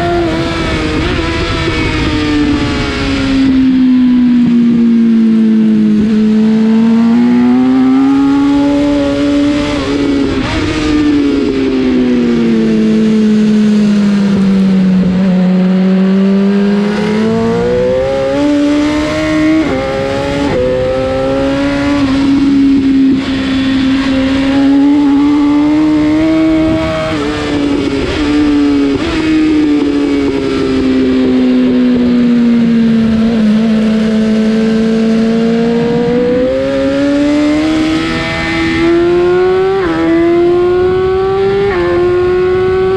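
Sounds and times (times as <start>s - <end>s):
motorcycle engine revving: 0.0s - 42.9s
wind noise: 0.0s - 42.9s.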